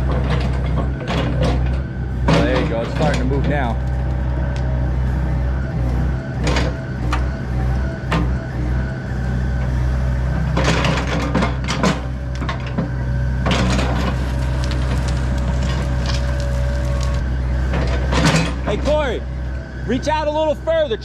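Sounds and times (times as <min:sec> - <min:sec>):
wood cracking and clanking: 0:00.0 - 0:04.7, 0:10.5 - 0:19.2
excavator diesel engine under load: 0:00.0 - 0:21.0
hydraulic whine: 0:00.0 - 0:21.0.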